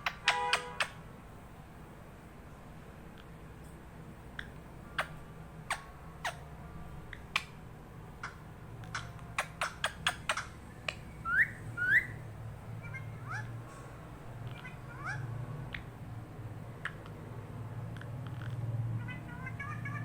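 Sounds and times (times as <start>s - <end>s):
parrot sharp clicks: 8.2s - 11.0s.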